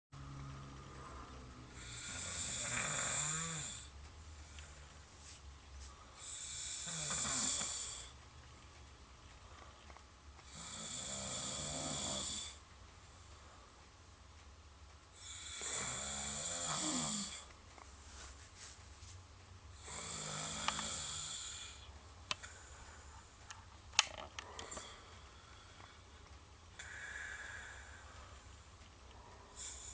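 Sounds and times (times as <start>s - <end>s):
quiet breathing: 0.2s - 29.9s
man snoring: 0.9s - 3.9s, 6.2s - 8.1s, 10.4s - 12.6s, 15.2s - 17.5s, 19.8s - 21.9s
sharp clicks: 22.2s - 22.6s.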